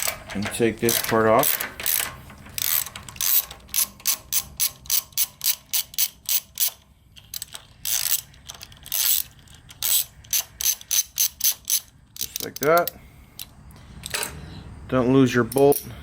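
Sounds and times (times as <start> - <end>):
ratchet wrench clicking: 0.0 - 14.4.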